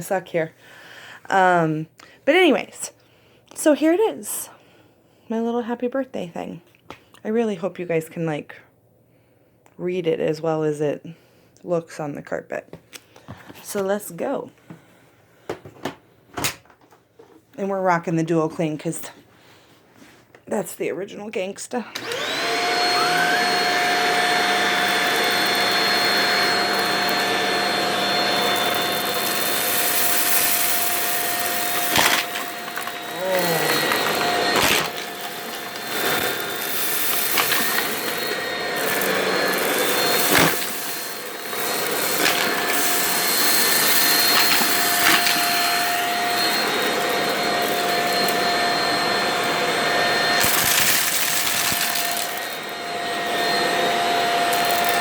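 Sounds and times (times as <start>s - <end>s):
vacuum cleaner motor whine: 21.9s - 55.0s
pieces clacking up vacuum nozzle: 22.0s - 49.2s, 50.3s - 52.7s, 54.5s - 55.0s.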